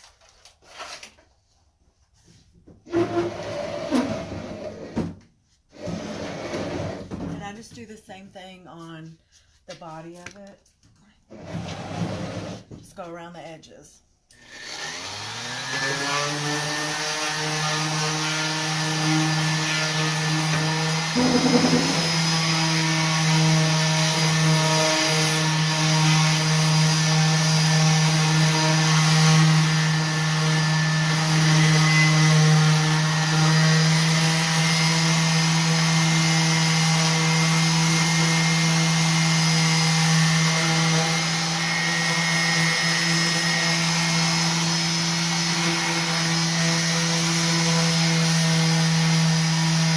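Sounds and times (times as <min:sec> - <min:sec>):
orbital sander motor hum: 0:18.4 - 0:33.2
sandpaper hissing on wood: 0:21.2 - 0:22.3.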